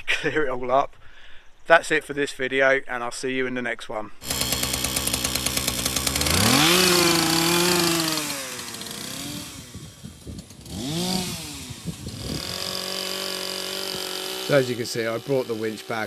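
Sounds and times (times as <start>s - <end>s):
chainsaw idling and revving: 4.2s - 16.0s.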